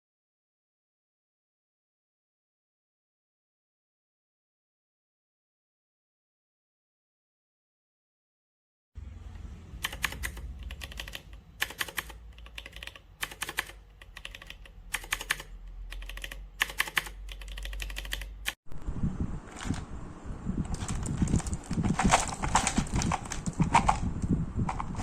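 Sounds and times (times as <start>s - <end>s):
low steady hum: 9.0s - 25.0s
mechanical keyboard typing: 9.8s - 18.6s, 20.7s - 25.0s.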